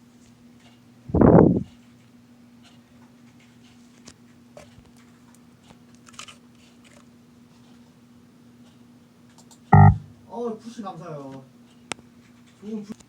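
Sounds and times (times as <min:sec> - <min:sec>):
small clicks and crackles: 0:01.8 - 0:07.8
faint low hum: 0:09.8 - 0:10.1.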